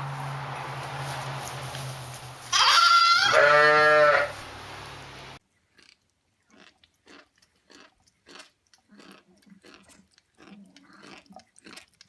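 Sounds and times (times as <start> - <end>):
farm animal bleating: 2.5 - 4.4.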